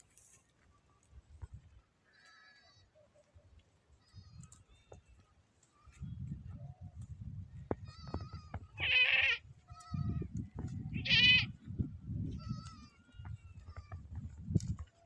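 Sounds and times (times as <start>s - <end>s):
goat bleating: 2.1s - 2.9s, 7.8s - 11.6s, 12.3s - 14.0s.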